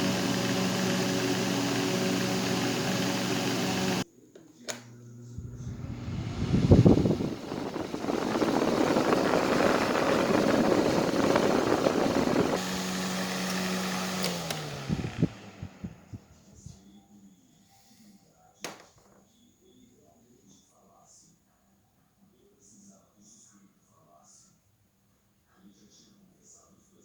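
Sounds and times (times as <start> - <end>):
electric fan running: 0.0 - 4.0, 4.6 - 16.8
fan clicks: 4.4 - 5.0, 13.4 - 16.0.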